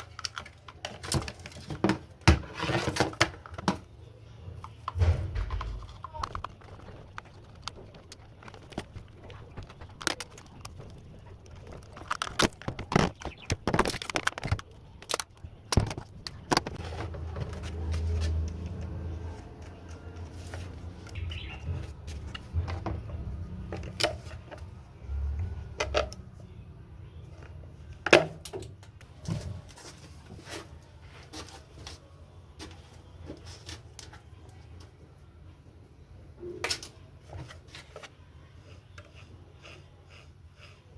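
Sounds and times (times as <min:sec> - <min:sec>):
hard objects knocking and clattering: 0:04.9 - 0:17.7.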